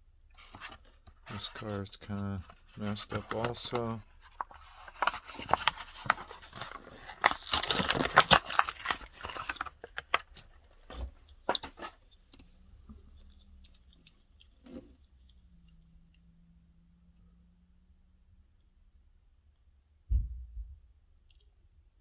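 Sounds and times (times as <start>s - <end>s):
packaging crinkling and rustling: 0.4s - 12.5s
faint low hum: 12.2s - 22.0s.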